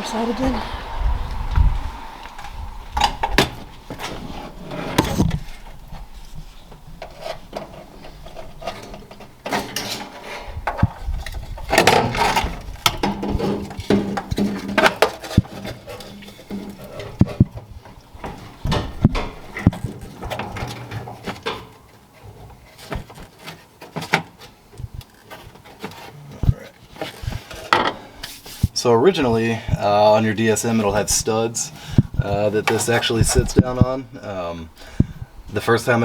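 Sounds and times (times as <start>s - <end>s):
parts clattering and scraping: 2.2s - 28.8s.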